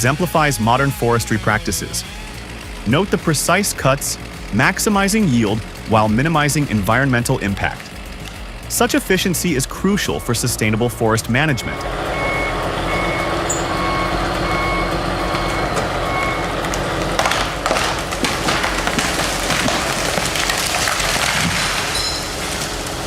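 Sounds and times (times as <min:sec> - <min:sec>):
loud noisy machine: 0:00.0 - 0:23.0
vehicle engine running: 0:00.0 - 0:23.0
reversing alarm beeping: 0:08.7 - 0:16.6.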